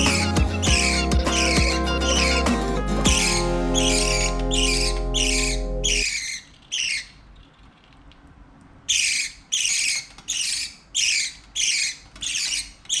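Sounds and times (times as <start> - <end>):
parakeet calling harshly: 0.0 - 7.2, 8.9 - 13.0.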